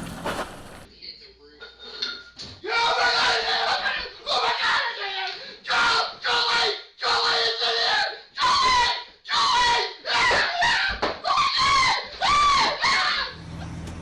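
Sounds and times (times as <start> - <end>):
person screaming: 2.6 - 13.4.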